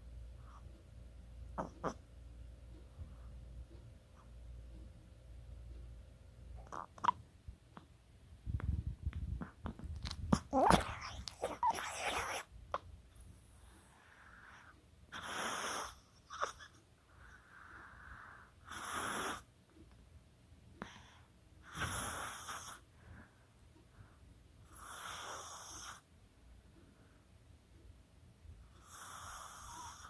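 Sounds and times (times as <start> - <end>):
dog snoring: 1.6 - 2.0, 15.1 - 16.7, 18.6 - 19.5, 21.6 - 22.8, 24.6 - 26.0, 28.7 - 30.0.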